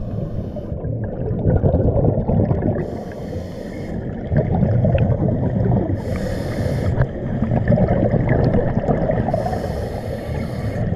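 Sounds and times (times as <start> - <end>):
rumble of exhaled bubbles: 0.0 - 10.9
rushing water underwater: 0.0 - 10.9
scuba regulator hissing: 6.0 - 7.0, 9.4 - 10.9.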